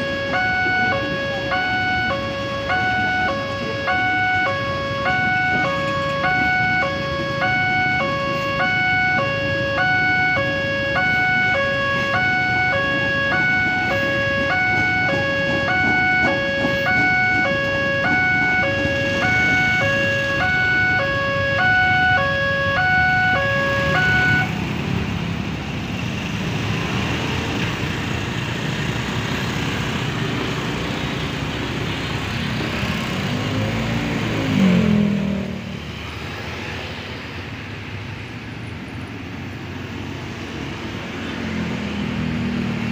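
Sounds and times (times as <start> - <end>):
two-tone warning siren: 0.0 - 24.8.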